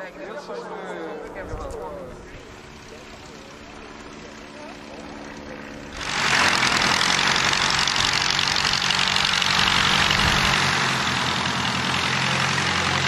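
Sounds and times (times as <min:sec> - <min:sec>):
propeller aircraft engine drone: 0:00.0 - 0:13.0.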